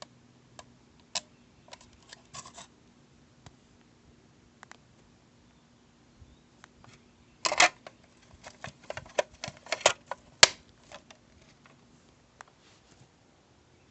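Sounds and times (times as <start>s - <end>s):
faint steady hum: 0.0s - 13.9s
sharp clicks and knocks: 7.4s - 11.8s.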